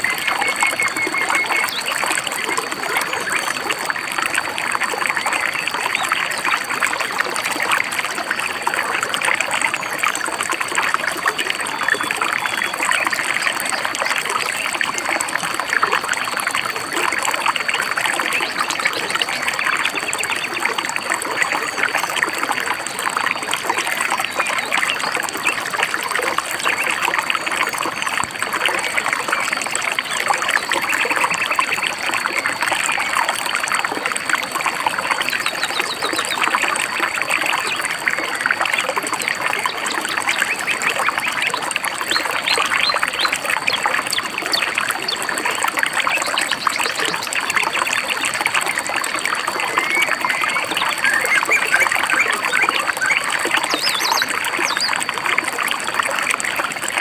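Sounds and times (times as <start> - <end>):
faint high bird chirps: 0.0 - 2.0, 49.6 - 55.0
stream babbling over stones: 0.0 - 57.0.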